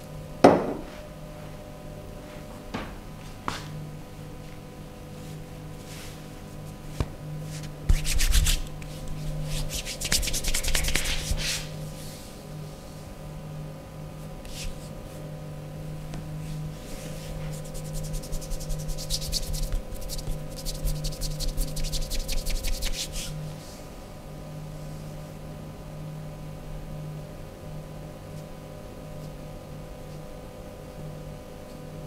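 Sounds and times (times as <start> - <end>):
hands rubbing over skin: 7.5 - 11.7, 14.5 - 14.9, 16.8 - 23.4.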